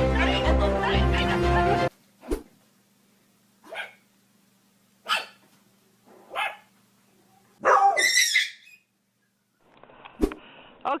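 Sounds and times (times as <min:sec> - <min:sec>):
dog barking: 0:03.6 - 0:04.0, 0:05.0 - 0:05.4, 0:06.3 - 0:06.7, 0:07.6 - 0:08.6.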